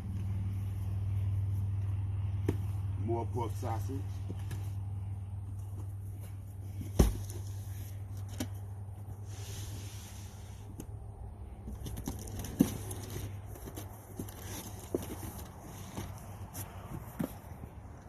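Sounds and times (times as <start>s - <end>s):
steady low hum: 0.0s - 18.0s
packages knocking and rustling: 5.5s - 8.7s, 11.6s - 17.8s.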